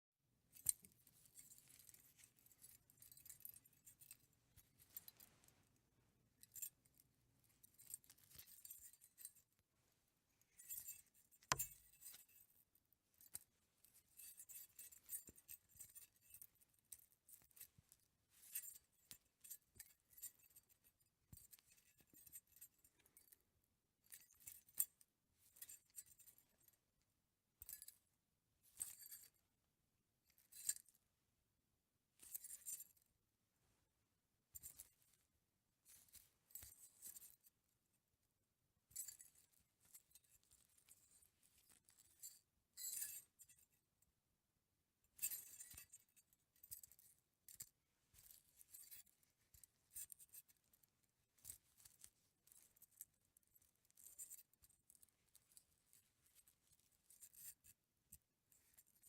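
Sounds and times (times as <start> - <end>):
necklace jingling: 0.5 - 5.5, 7.6 - 9.4, 10.4 - 12.5.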